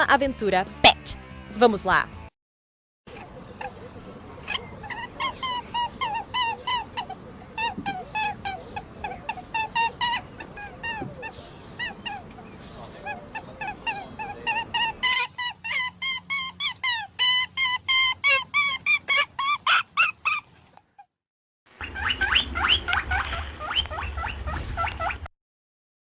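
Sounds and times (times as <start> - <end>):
rabbit squeaking: 3.1 - 21.1.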